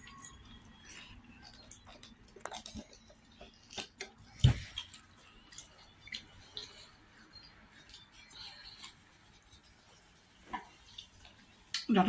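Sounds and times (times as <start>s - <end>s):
mouth chewing food: 0.1s - 9.7s.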